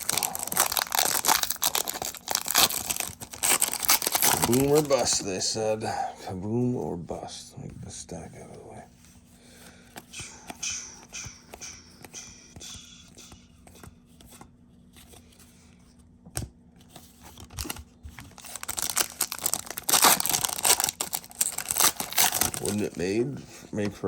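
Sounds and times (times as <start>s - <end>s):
wrapper tearing and crinkling: 0.0s - 5.2s, 17.4s - 23.0s.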